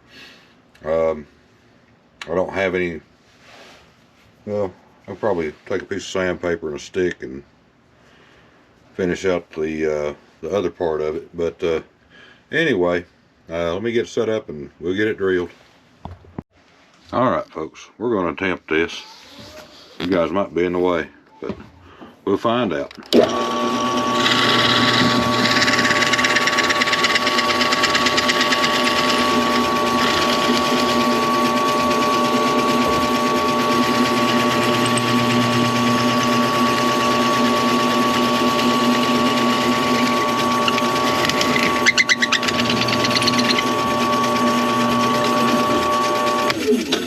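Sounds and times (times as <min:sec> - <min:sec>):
electric drill motor under load: 0:23.1 - 0:47.0.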